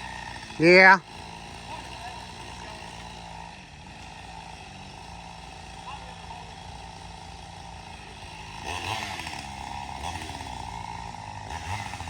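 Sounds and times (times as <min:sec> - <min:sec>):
chainsaw revving: 0:00.0 - 0:12.0.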